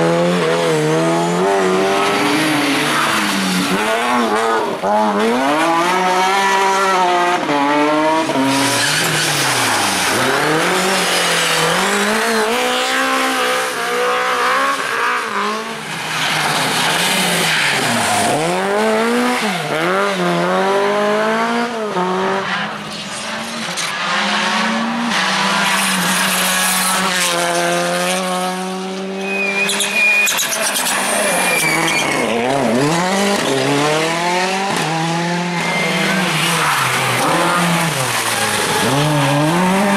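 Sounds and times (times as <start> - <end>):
rally car engine revving: 0.0 - 39.9
tyres squealing: 29.3 - 32.7.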